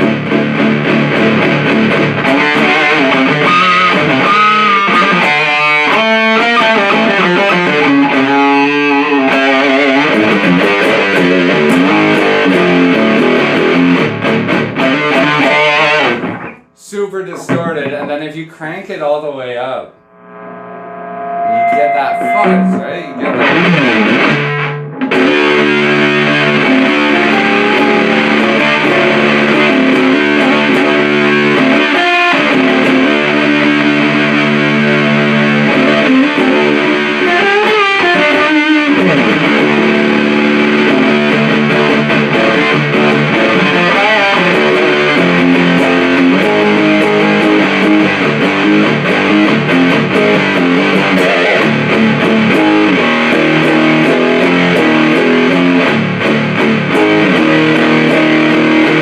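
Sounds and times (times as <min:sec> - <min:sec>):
fuzzed electric guitar: 0:00.0 - 0:59.0.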